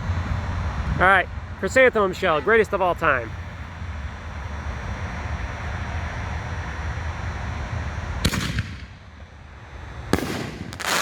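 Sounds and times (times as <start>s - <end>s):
firework rushing: 4.9s - 9.1s, 10.1s - 11.0s
firework booms with echo: 10.1s - 11.0s.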